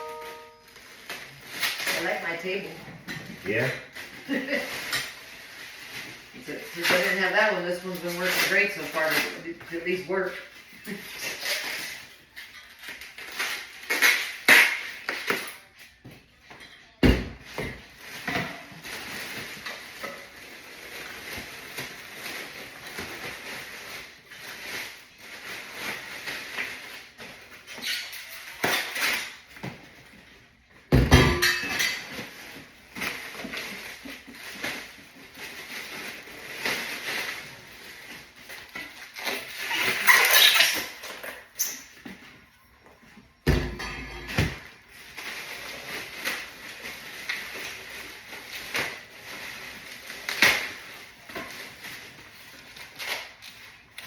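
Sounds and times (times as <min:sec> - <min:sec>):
tools clinking and clattering: 0:31.1 - 0:35.9, 0:37.2 - 0:42.4.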